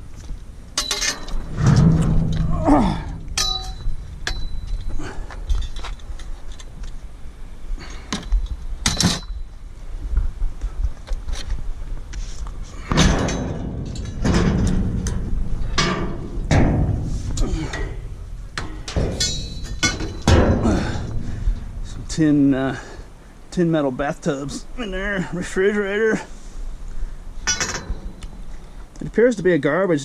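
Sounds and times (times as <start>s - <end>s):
debris scraping and rustling: 0.0s - 9.4s
steady low rumble: 0.0s - 29.0s
metal scrap clanking: 0.8s - 6.7s, 12.8s - 21.6s, 27.4s - 28.3s.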